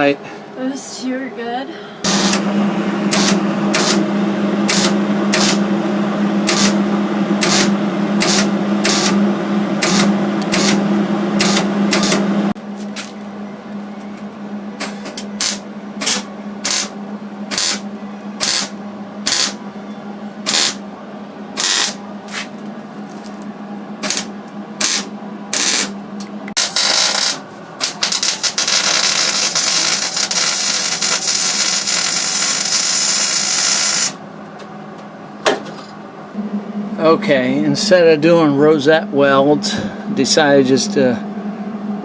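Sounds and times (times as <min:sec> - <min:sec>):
low hum: 0:00.0 - 0:42.0
welding arc crackling: 0:02.1 - 0:05.8, 0:06.4 - 0:12.6, 0:14.8 - 0:17.8, 0:18.4 - 0:19.6, 0:20.5 - 0:20.8, 0:21.5 - 0:22.5, 0:24.0 - 0:26.0, 0:26.6 - 0:34.2.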